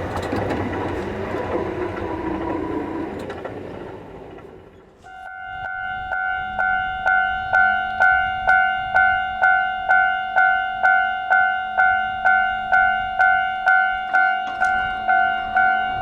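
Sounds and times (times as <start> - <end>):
level crossing warning bell: 5.1 - 16.0.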